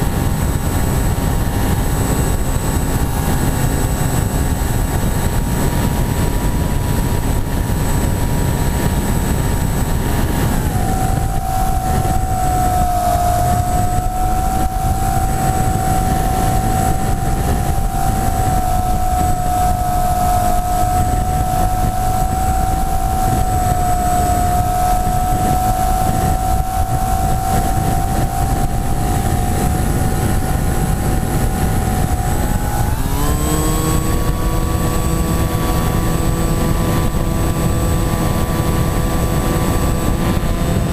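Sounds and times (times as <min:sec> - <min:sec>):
electric motor and propeller whine: 0:00.0 - 0:40.9
wind rush on microphone: 0:00.0 - 0:40.9.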